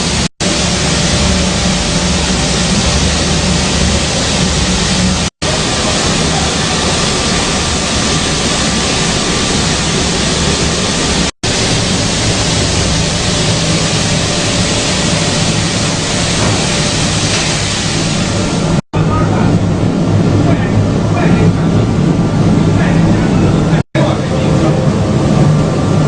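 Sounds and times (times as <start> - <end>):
milling machine running: 0.0 - 18.8.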